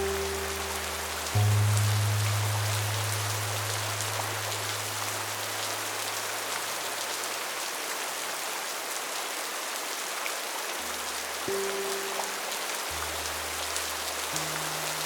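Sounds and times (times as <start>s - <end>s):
background music low note: 0.0s - 6.7s, 11.1s - 15.0s
steady rain falling: 0.0s - 15.0s.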